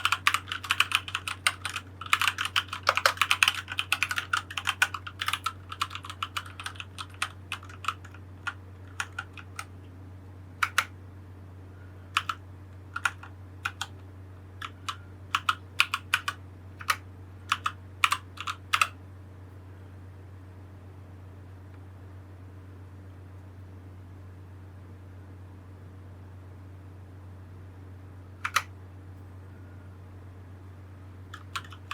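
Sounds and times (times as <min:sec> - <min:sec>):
mechanical keyboard keystrokes: 0:00.0 - 0:09.7, 0:10.6 - 0:10.9, 0:12.2 - 0:12.4, 0:13.0 - 0:13.9, 0:14.6 - 0:19.0, 0:28.4 - 0:28.7, 0:31.3 - 0:31.9.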